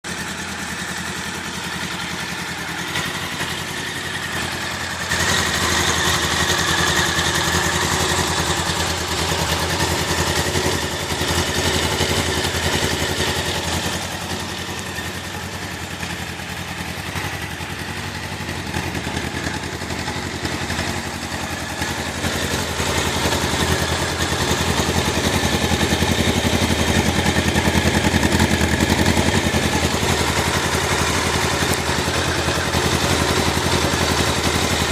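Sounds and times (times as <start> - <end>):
motorcycle engine idling: 0.0 - 34.9.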